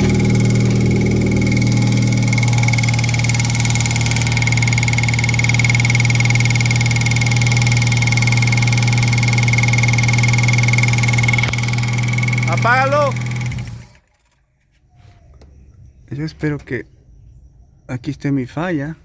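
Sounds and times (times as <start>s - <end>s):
high whine: 0.0s - 13.9s
car engine idling: 0.0s - 14.0s
engine clacking: 0.0s - 14.4s.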